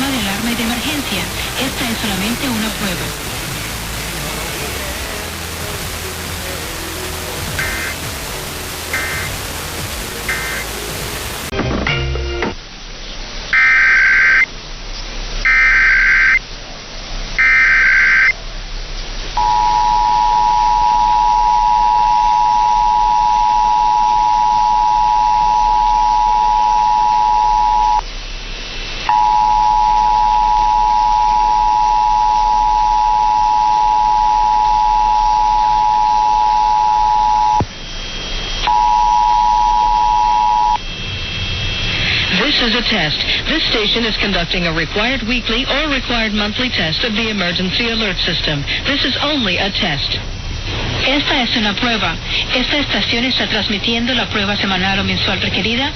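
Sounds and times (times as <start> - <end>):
buzzing data bursts: 7.5 - 8.2, 8.9 - 10.8
two-tone attention signal: 7.6 - 8.0, 9.0 - 9.3, 19.4 - 28.0, 29.1 - 37.6, 38.6 - 40.8.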